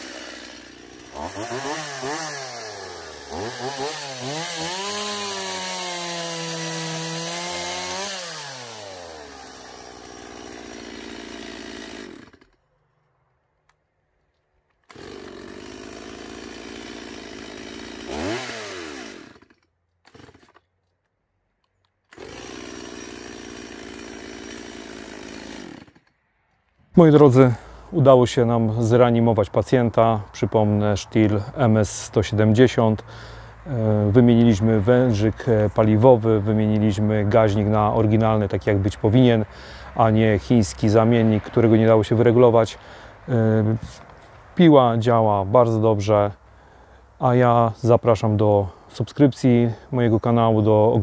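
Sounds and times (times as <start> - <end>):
chainsaw revving: 0.0 - 12.6, 14.9 - 20.6, 22.1 - 26.1, 31.6 - 44.3.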